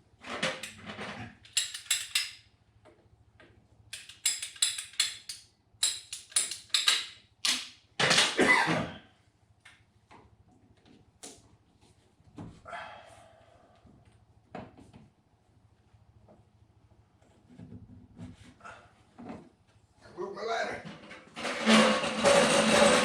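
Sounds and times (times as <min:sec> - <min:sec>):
hand saw cutting pipe: 0:21.4 - 0:23.0.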